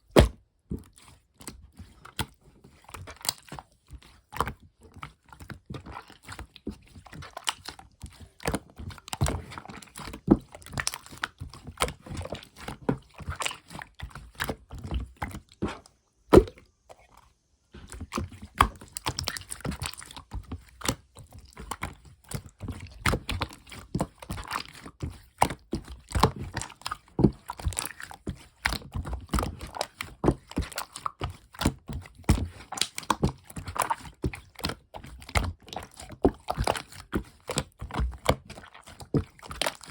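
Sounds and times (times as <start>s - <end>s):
air-bubble pops: 16.3s - 16.6s.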